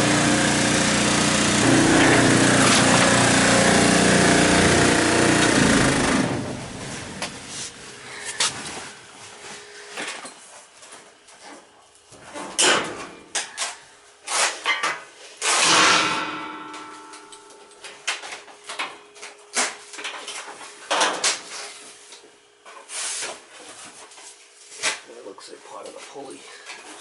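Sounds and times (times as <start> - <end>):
loud ringing metal clang: 15.6 - 17.7.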